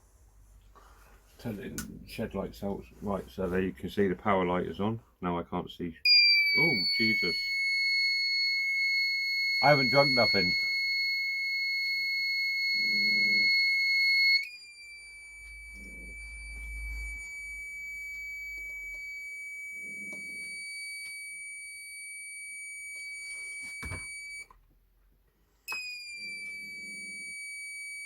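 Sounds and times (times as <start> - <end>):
high-pitched alarm buzzer tone: 6.1 - 24.5, 25.7 - 28.0.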